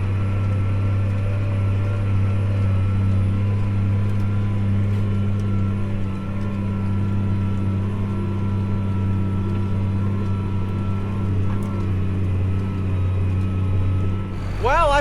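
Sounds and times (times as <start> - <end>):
tractor diesel engine at full throttle: 14.2 - 15.0
faint steady whine: 14.3 - 15.0.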